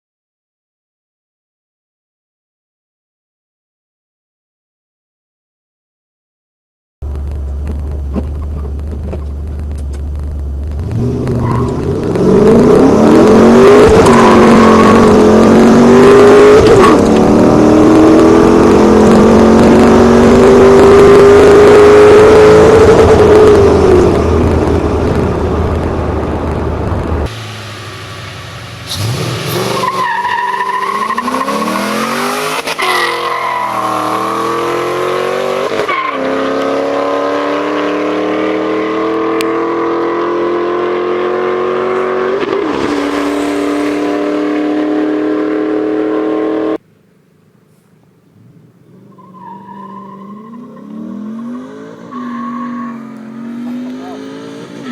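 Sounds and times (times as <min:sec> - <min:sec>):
car engine idling: 0:07.0 - 0:11.0, 0:24.5 - 0:32.0
engine revving: 0:07.1 - 0:24.9, 0:27.2 - 0:46.8, 0:50.2 - 0:54.9
car engine accelerating through gears: 0:07.1 - 0:46.8, 0:48.4 - 0:54.9.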